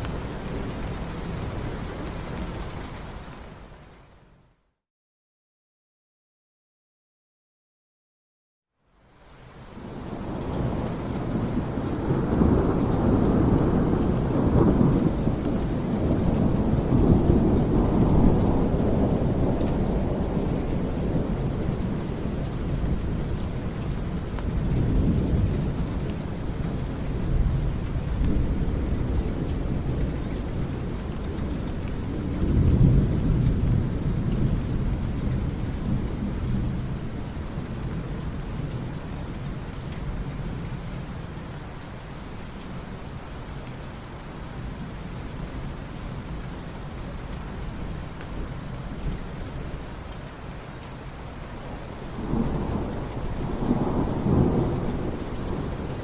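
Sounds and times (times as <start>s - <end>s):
steady rain: 0.0s - 4.8s, 8.7s - 56.0s
low rolling thunder: 9.8s - 41.1s, 51.6s - 56.0s.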